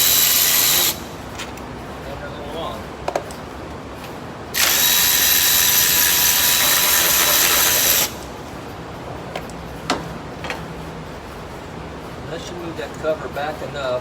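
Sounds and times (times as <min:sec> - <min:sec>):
power tool running: 0:00.0 - 0:01.1, 0:04.5 - 0:08.3.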